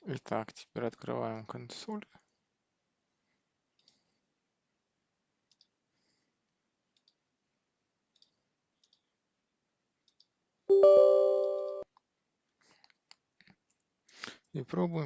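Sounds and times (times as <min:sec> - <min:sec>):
computer mouse clicks: 0:05.5 - 0:05.7, 0:06.9 - 0:07.2, 0:08.1 - 0:09.0
computer alert sound: 0:10.7 - 0:11.8.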